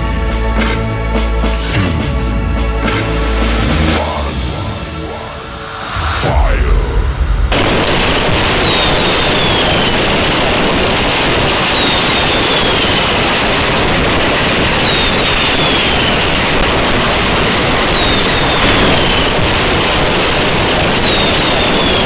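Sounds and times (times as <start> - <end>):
dense crackling fireworks: 5.7 - 22.0
descending firework whistle: 8.2 - 10.3, 11.4 - 13.3, 14.5 - 16.4, 20.6 - 22.0.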